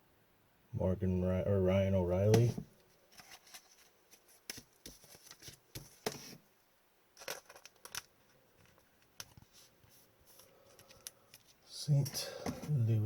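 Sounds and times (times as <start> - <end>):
cards sliding rustles: 2.3 - 6.4.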